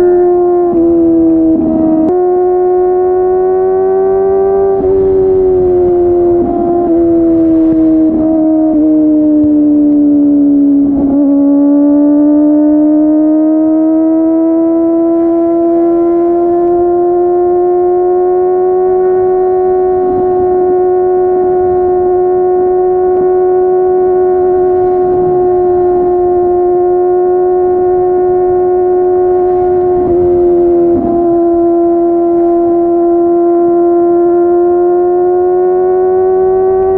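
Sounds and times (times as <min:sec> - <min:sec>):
motorcycle engine high revs: 0:00.0 - 0:36.9.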